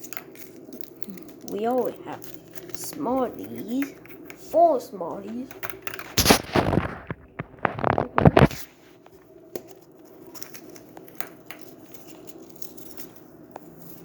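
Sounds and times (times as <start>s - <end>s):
plastic wrappers rustling: 0.0s - 4.5s, 5.2s - 8.7s, 9.7s - 14.0s
toys and candy being handled: 0.0s - 14.0s.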